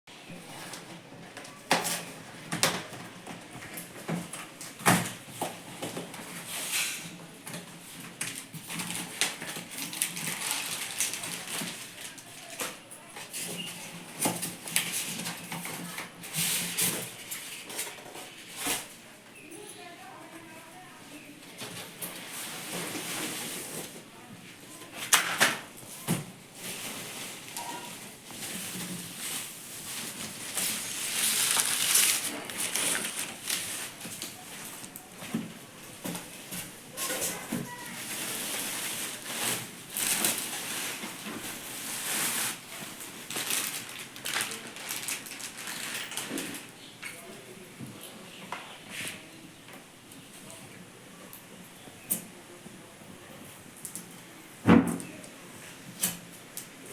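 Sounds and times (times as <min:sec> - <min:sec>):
packaging crinkling and rustling: 0:04.7 - 0:18.9, 0:24.8 - 0:46.8
cardboard box rustling: 0:28.3 - 0:34.2.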